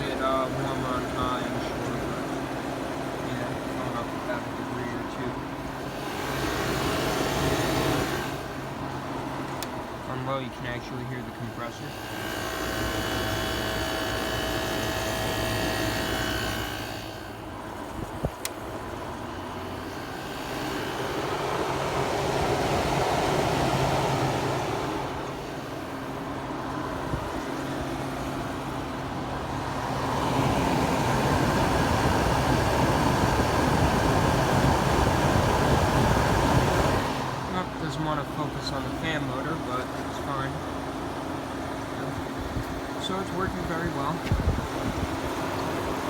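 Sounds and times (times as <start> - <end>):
air conditioner compressor hum: 0.0 - 46.0
fan air rushing: 0.0 - 46.0
click: 18.4 - 18.6.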